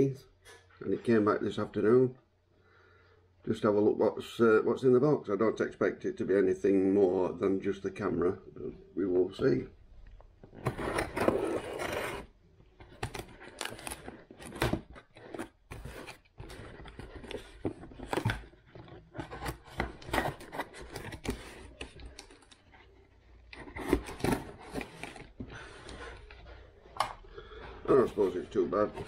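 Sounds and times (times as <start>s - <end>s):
scraping and rustling of packaging: 10.4s - 26.9s, 27.8s - 29.0s.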